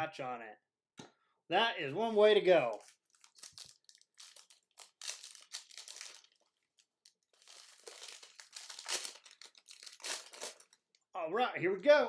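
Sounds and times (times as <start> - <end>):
packaging crinkling: 2.7 - 11.1.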